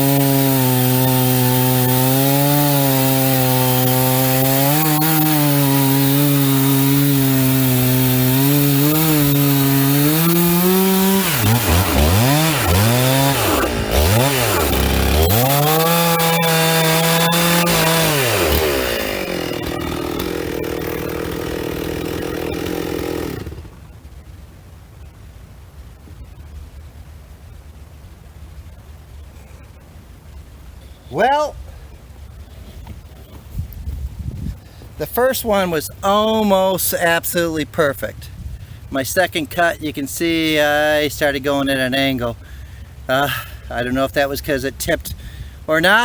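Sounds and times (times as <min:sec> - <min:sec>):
chainsaw cutting wood: 0:00.0 - 0:23.9.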